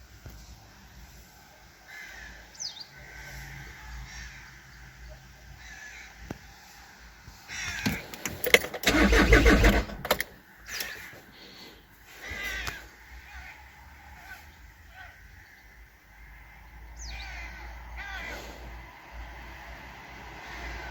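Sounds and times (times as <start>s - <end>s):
engine cranking without starting: 7.7s - 11.0s.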